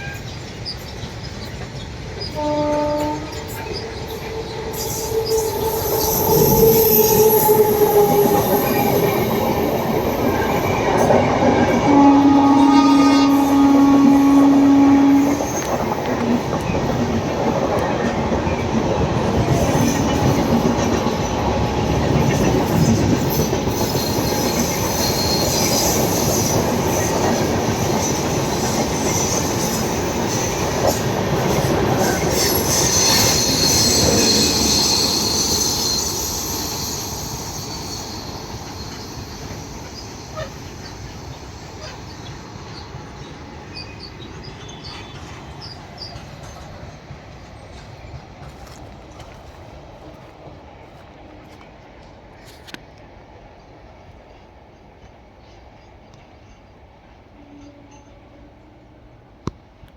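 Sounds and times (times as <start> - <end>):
train rumbling on rails: 0.0 - 59.9
locomotive horn: 2.4 - 9.4, 11.4 - 15.8
high wheel squeal: 2.4 - 10.9, 23.3 - 27.2, 28.0 - 42.9.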